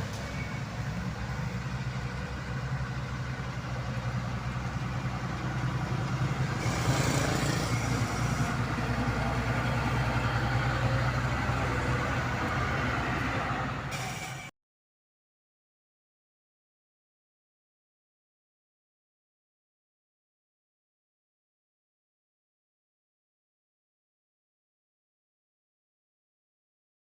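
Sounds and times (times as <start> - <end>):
diesel engine running: 0.0 - 14.5.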